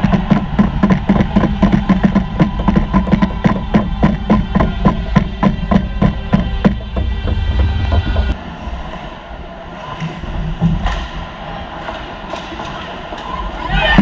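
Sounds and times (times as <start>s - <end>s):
loud percussive music: 0.0s - 8.4s.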